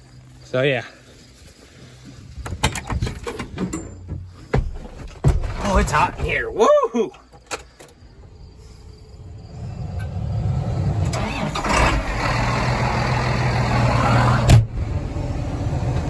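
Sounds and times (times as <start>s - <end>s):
tractor engine starting and idling: 8.6s - 16.0s.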